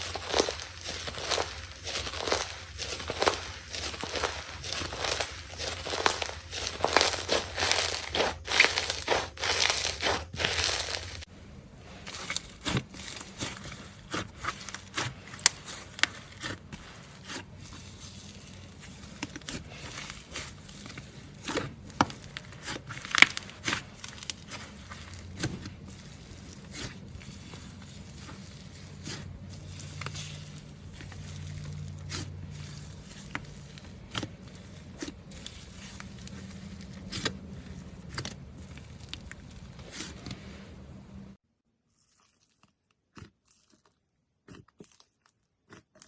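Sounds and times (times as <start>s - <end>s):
slime crackling: 0.0s - 11.3s.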